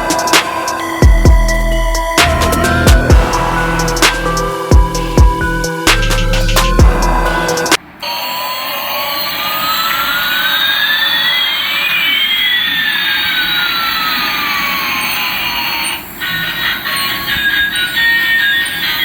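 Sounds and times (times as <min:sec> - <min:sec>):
music: 0:00.0 - 0:12.3, 0:14.9 - 0:19.0.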